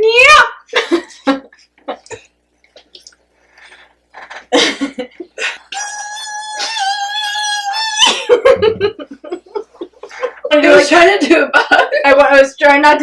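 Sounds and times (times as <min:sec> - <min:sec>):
person making vocal buzz sound: 0:05.7 - 0:08.2.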